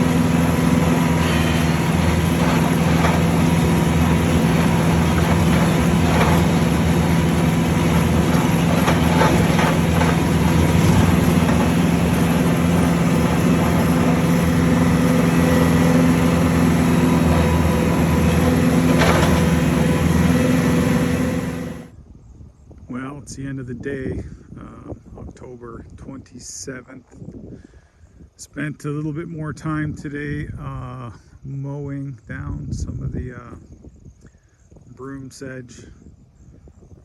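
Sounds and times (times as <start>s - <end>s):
engine running steadily: 0.0s - 21.9s
faint knocks and rattles: 0.2s - 20.5s.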